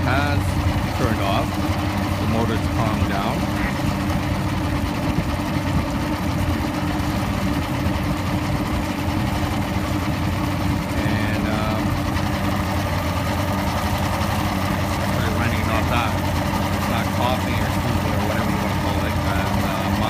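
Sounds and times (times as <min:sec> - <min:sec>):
outboard motor idling: 0:00.0 - 0:20.0.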